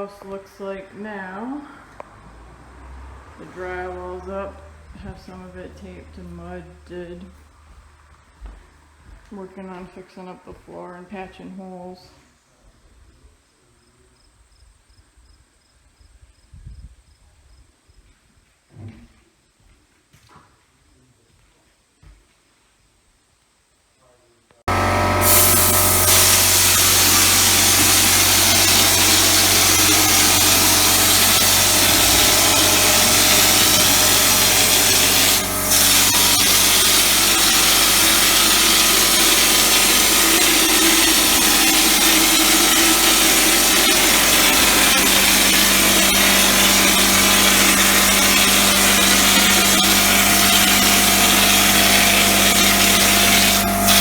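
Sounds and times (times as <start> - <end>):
electric power tool humming: 24.7 - 54.0.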